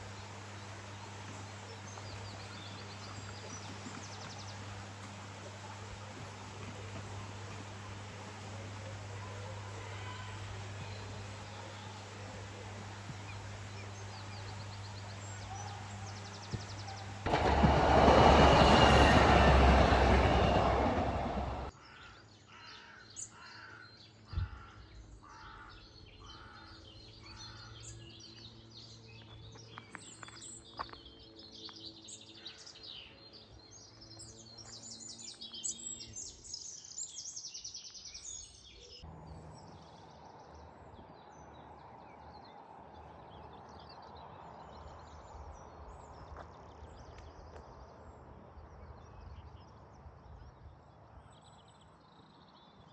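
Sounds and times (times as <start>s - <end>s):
birds singing: 0.0s - 29.0s.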